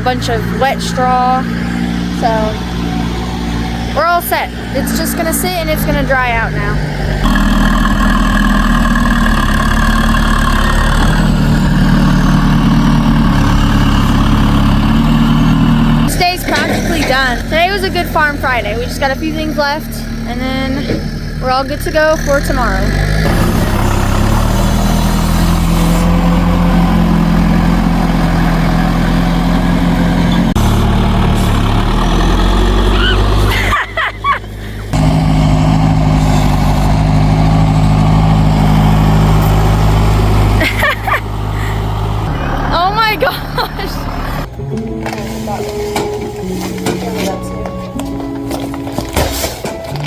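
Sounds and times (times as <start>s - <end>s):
engine idling: 0.0s - 50.0s.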